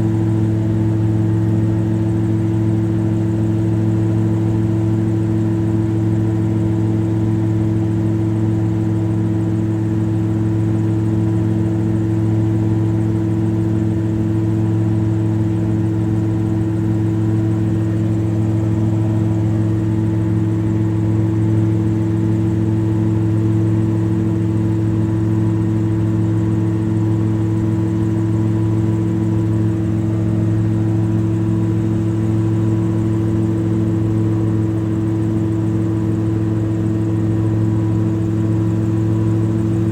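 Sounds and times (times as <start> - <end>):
drone propellers humming: 16.1 - 36.9.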